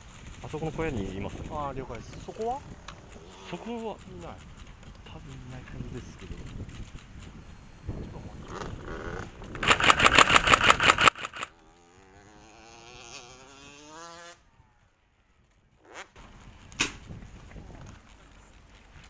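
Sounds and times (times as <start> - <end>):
airsoft gun firing burst: 9.6 - 11.5
motorcycle engine running: 9.6 - 11.5.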